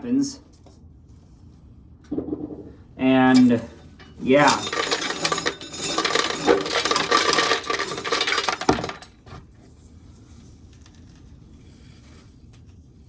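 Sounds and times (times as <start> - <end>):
dry corn rattling: 3.3 - 9.3.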